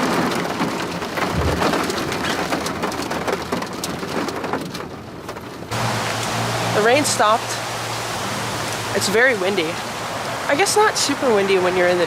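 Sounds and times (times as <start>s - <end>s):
rain drops ticking: 0.0s - 12.0s
low thump: 1.2s - 2.2s.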